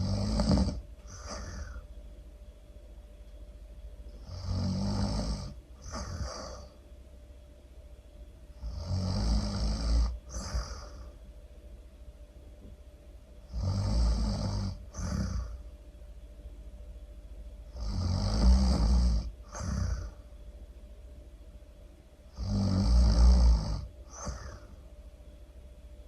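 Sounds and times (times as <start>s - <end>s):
person snoring loudly: 0.0s - 1.8s, 4.2s - 6.8s, 8.6s - 11.1s, 13.5s - 15.6s, 17.7s - 20.2s, 22.3s - 24.8s.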